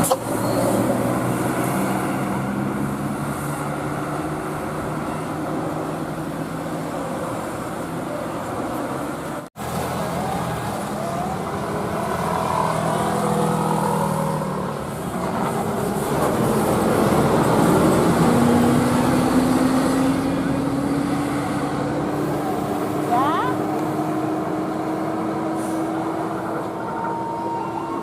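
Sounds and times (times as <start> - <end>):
roadside traffic: 0.0 - 28.0
engine hum rising in pitch: 9.6 - 28.0.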